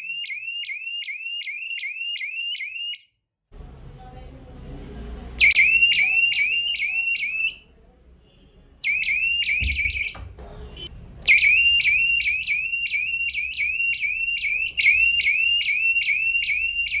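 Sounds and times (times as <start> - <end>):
dull knock: 9.6 - 10.7
rising electronic buzzer chirps: 11.3 - 17.0.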